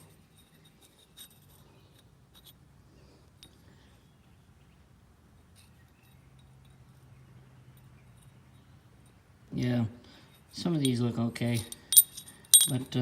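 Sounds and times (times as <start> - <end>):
metal bike parts clinking: 10.2 - 13.0.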